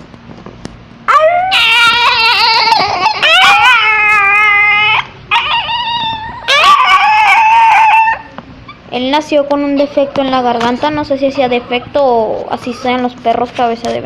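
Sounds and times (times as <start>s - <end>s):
dog crying high and wavering: 1.1s - 8.9s.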